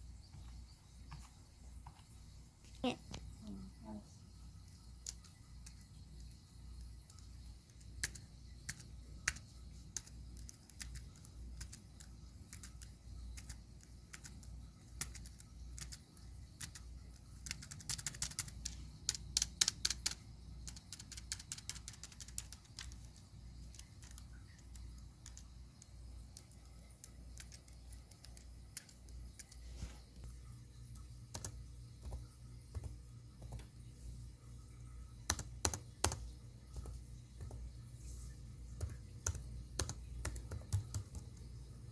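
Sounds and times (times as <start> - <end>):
keyboard keys clacking: 35.2 - 37.6.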